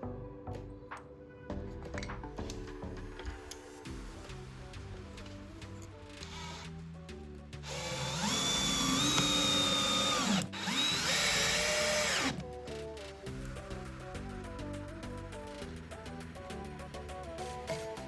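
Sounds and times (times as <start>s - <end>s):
background music: 0.0s - 18.0s
electric drill whining: 7.6s - 12.5s.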